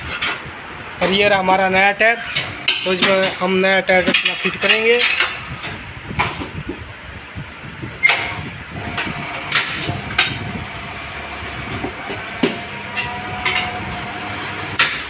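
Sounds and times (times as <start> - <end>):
workshop noise: 0.0 - 15.0
metal knocks and clanks: 4.0 - 6.6, 8.0 - 10.7, 11.6 - 15.0.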